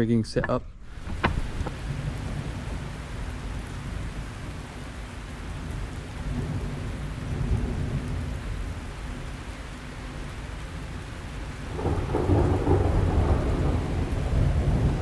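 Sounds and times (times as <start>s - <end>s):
wind buffeting microphone: 0.8s - 4.6s, 11.7s - 15.0s.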